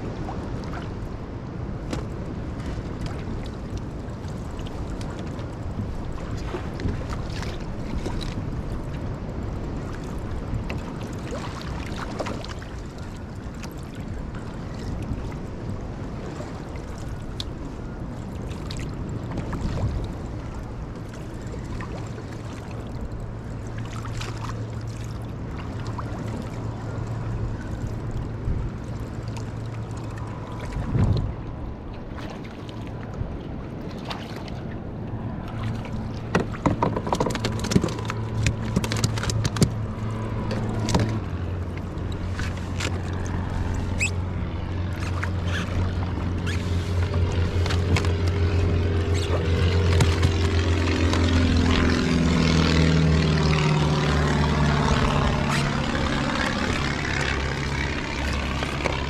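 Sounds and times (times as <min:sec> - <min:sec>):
sea water splashing around kayak: 0:00.0 - 0:59.0
wind buffeting microphone: 0:24.5 - 0:32.2.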